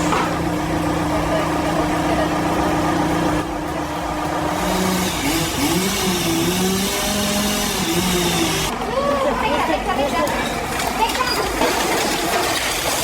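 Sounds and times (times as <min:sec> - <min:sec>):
engine revving: 0:04.4 - 0:08.8.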